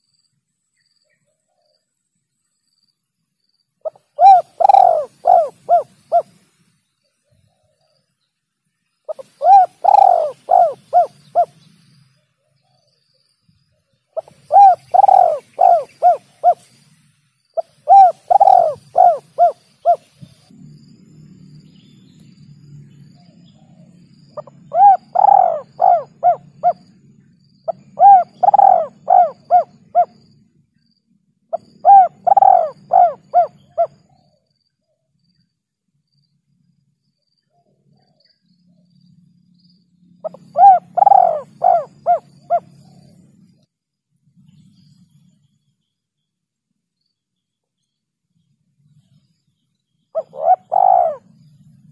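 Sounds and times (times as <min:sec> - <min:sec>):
dove cooing: 0:03.8 - 0:06.4, 0:09.1 - 0:11.6, 0:14.2 - 0:16.7, 0:17.6 - 0:20.2, 0:23.5 - 0:26.9, 0:27.7 - 0:30.2, 0:31.5 - 0:34.3, 0:40.2 - 0:43.4, 0:50.2 - 0:51.6.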